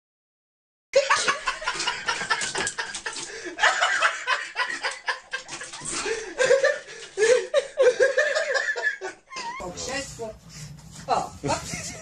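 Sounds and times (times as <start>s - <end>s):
people laughing: 1.0s - 9.6s.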